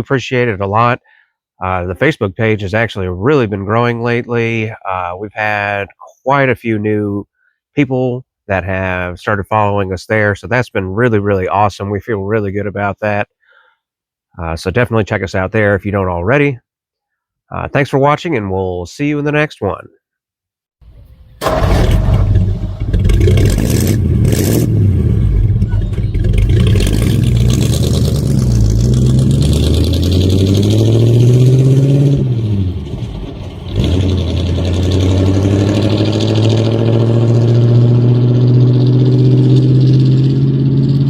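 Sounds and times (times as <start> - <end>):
vehicle engine revving: 21.4 - 41.0.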